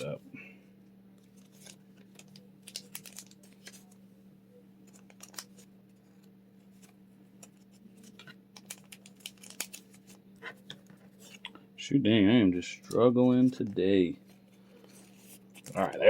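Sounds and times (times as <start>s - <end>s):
steady low hum: 0.0s - 16.0s
plastic sleeves crinkling: 1.2s - 4.0s, 4.8s - 11.5s, 12.8s - 16.0s.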